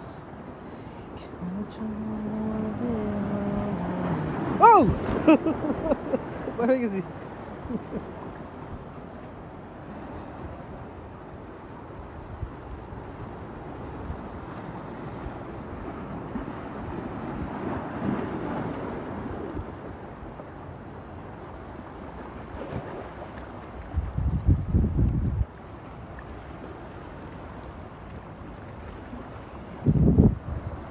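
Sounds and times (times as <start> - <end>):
ocean surf washing: 0.0 - 30.9
wind blowing on microphone: 2.3 - 7.0, 23.8 - 25.6, 29.7 - 30.9.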